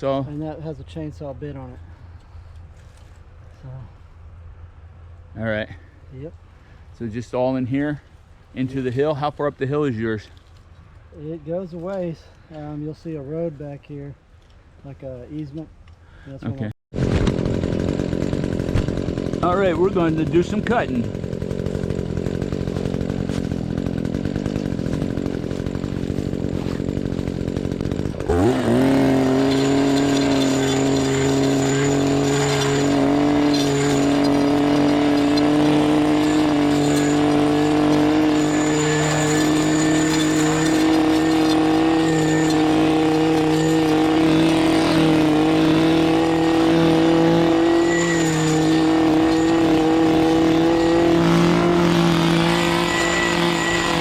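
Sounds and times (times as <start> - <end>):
chainsaw engine idling and revving: 17.0 - 54.0.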